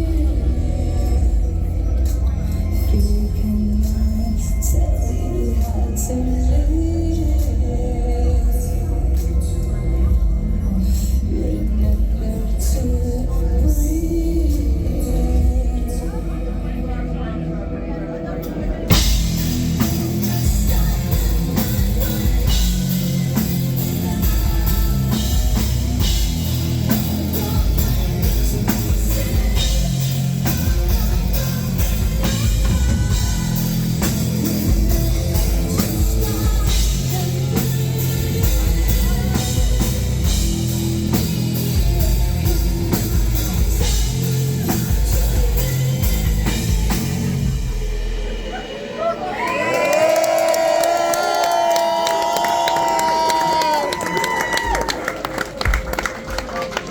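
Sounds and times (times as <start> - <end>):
distorted guitars and bass: 0.0 - 48.7
person singing: 0.0 - 55.0
heavy metal band playing: 18.2 - 49.4
pounding drum kit: 18.6 - 56.8.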